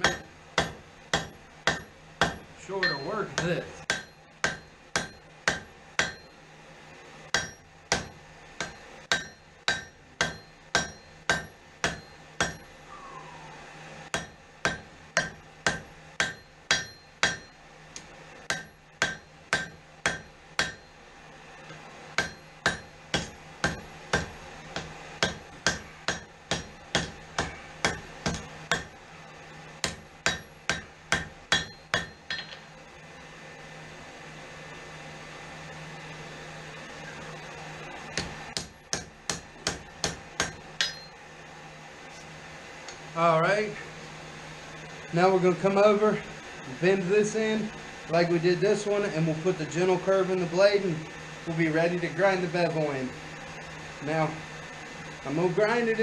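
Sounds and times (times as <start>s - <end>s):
hammer striking steel on anvil: 0.0s - 6.4s, 7.3s - 12.8s, 14.1s - 21.0s, 21.6s - 29.0s, 29.8s - 32.7s, 38.1s - 41.2s
steady low hum: 0.0s - 56.0s.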